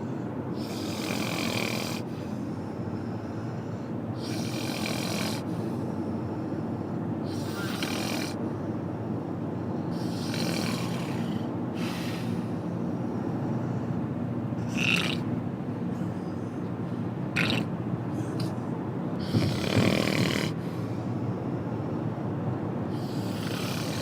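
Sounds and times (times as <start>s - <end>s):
person snoring: 7.3s - 8.4s, 10.0s - 12.3s, 19.2s - 20.6s, 23.0s - 24.0s.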